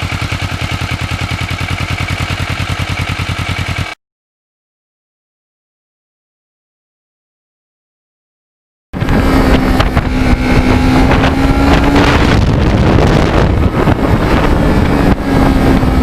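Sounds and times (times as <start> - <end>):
motorcycle engine running: 0.0 - 4.0, 9.0 - 16.0
wind buffeting microphone: 9.0 - 16.0.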